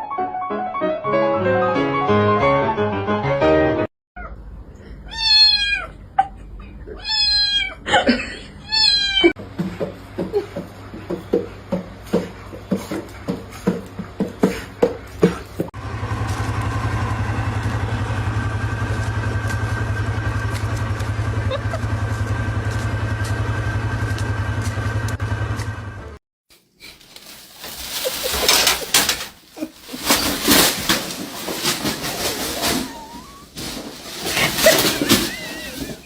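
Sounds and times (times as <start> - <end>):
cat meowing: 5.1 - 6.0, 6.9 - 7.8, 8.6 - 9.3
low hum: 15.8 - 26.2.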